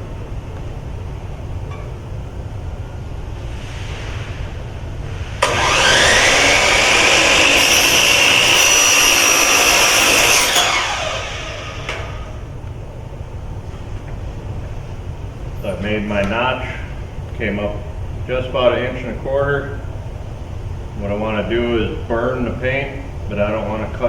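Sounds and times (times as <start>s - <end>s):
power saw cutting metal: 5.4s - 12.3s.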